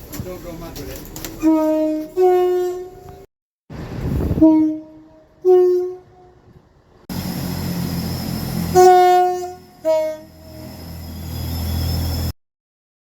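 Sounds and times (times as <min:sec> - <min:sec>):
train rumble: 0:00.0 - 0:12.3
two-tone train horn: 0:01.4 - 0:03.2, 0:04.2 - 0:06.6, 0:08.6 - 0:10.8.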